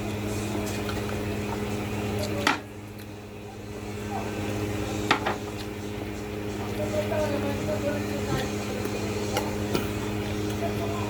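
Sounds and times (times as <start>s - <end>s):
steady electrical hum: 0.0s - 11.0s.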